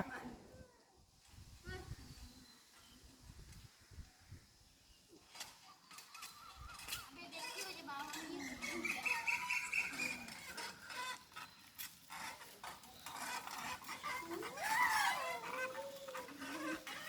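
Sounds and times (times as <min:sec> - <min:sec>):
drawn-out rising and falling call: 0:05.6 - 0:17.0.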